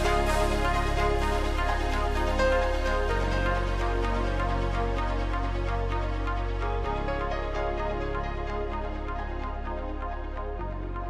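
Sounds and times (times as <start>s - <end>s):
electronic background music: 0.0s - 11.0s.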